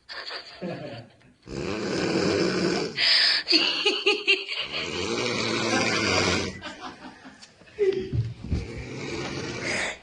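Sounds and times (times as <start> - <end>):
stifled giggling: 0.0 - 1.2, 3.5 - 5.0
woman snoring: 1.5 - 3.1, 4.6 - 6.6, 8.6 - 10.0
hissing breath: 8.6 - 10.0.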